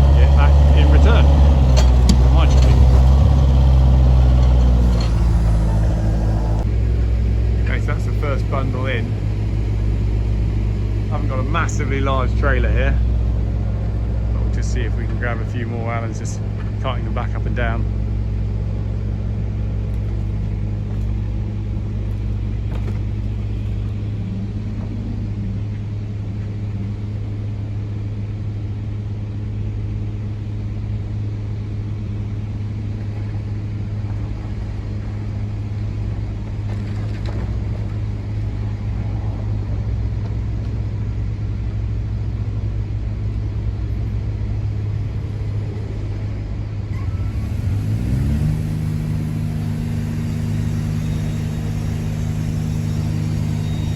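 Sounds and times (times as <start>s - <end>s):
vehicle engine revving: 0.0s - 27.4s, 45.3s - 53.9s.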